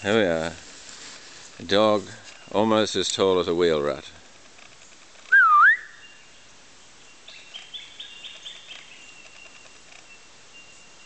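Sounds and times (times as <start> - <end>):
bird whistling: 5.3 - 6.2
bird chirps: 5.3 - 11.0.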